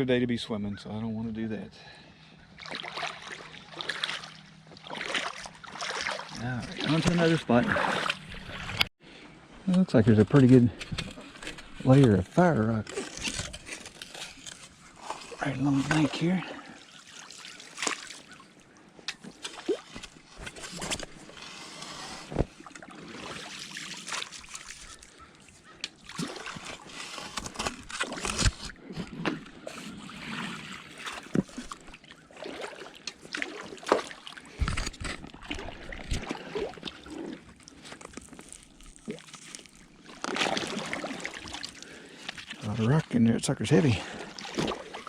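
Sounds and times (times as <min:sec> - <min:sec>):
river water sloshing and splashing: 0:02.4 - 0:08.9, 0:12.8 - 0:43.0, 0:43.7 - 0:45.0.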